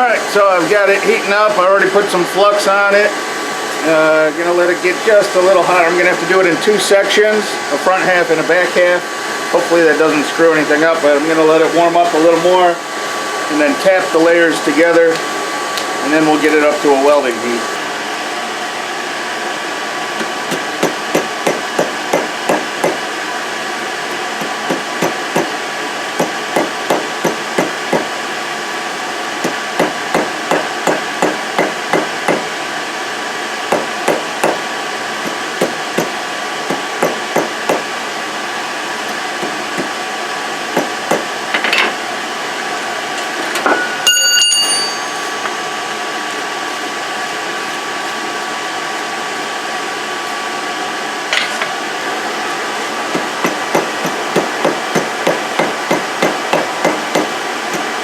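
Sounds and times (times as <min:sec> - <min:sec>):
air blower hum: 0:00.0 - 0:58.0
hammer tapping on anvil: 0:20.5 - 0:23.0, 0:26.2 - 0:28.1, 0:29.4 - 0:32.4, 0:33.7 - 0:34.6, 0:36.7 - 0:37.8, 0:43.6 - 0:45.6, 0:53.1 - 0:57.8
ringing metal clang: 0:43.7 - 0:45.6.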